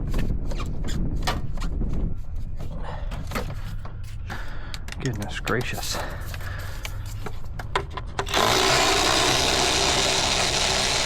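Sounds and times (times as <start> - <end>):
power tool driving a bolt: 8.2 - 11.0.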